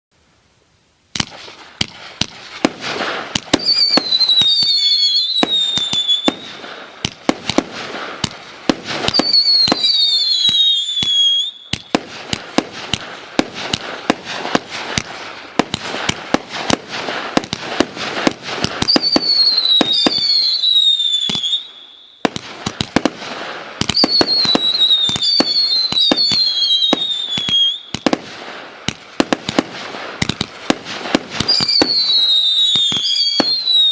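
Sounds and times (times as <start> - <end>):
firework shots and crackling: 1.1 - 33.9
descending firework whistles: 2.9 - 7.6, 9.0 - 12.1, 18.2 - 22.4, 23.0 - 28.2, 31.1 - 33.9.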